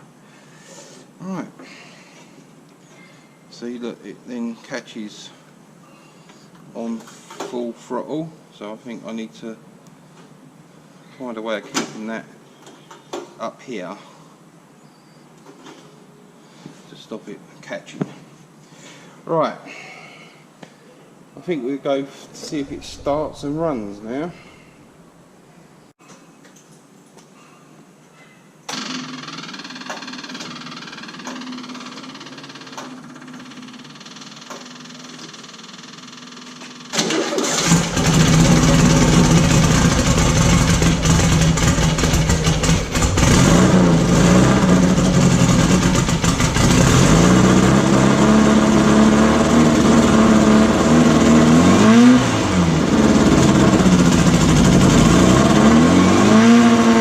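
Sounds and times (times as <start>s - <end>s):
starter hum: 28.7s - 57.0s
engine running and revving: 37.6s - 57.0s.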